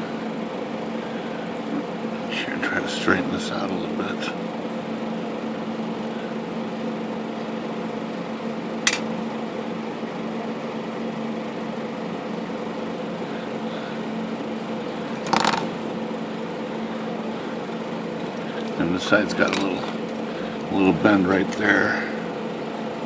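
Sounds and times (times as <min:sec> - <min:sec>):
steady low hum: 0:00.0 - 0:23.0
sharp click: 0:08.8 - 0:09.1.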